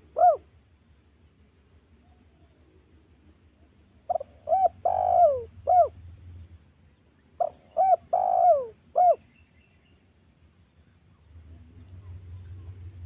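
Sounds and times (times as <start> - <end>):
dove cooing: 0.0 - 0.5, 4.1 - 6.0, 7.4 - 9.2.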